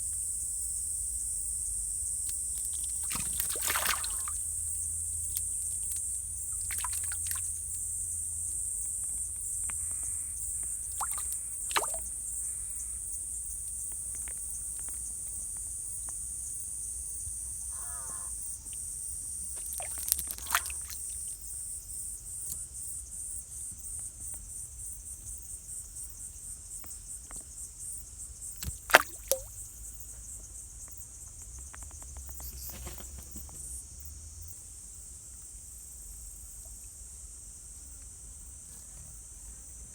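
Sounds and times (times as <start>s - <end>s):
insects buzzing: 0.0s - 39.9s.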